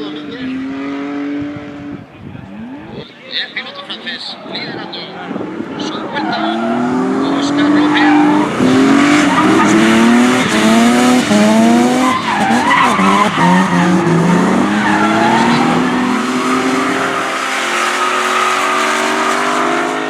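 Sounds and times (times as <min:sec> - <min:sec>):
car engine revving: 0:00.0 - 0:03.1, 0:04.8 - 0:20.0
tyres screeching: 0:05.8 - 0:20.0.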